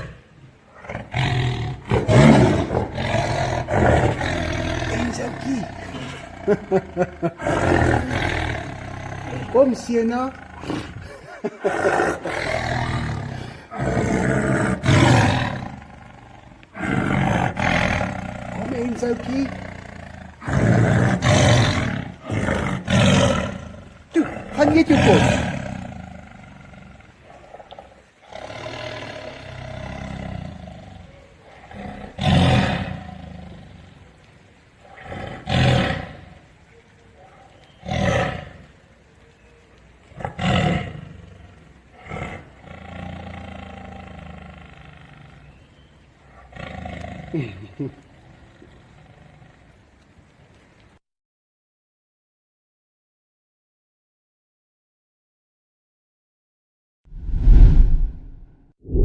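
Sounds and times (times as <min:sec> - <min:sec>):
tiger roaring: 0:00.0 - 0:34.0, 0:34.8 - 0:37.1, 0:37.7 - 0:38.8, 0:40.1 - 0:45.6, 0:46.2 - 0:48.0, 0:57.3 - 0:59.0.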